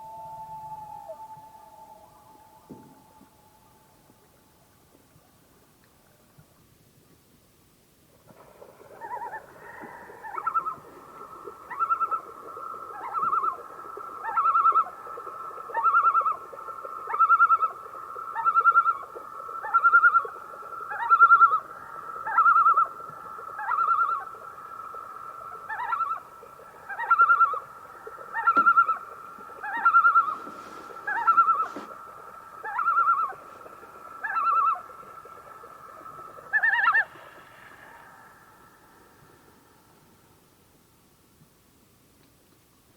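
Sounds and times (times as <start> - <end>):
loon calling: 0.0 - 4.0, 8.9 - 10.9, 11.5 - 24.5, 25.2 - 38.0.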